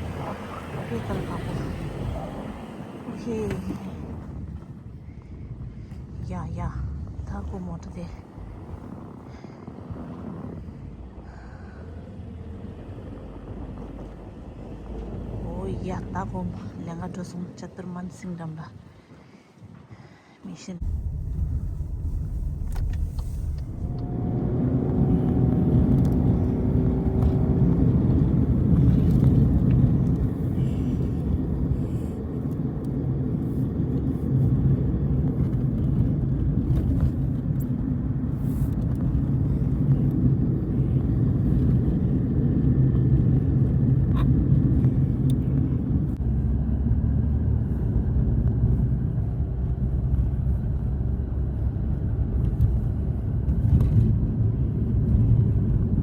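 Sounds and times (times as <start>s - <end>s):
road rumble: 0.0s - 56.0s
car engine running: 20.8s - 56.0s.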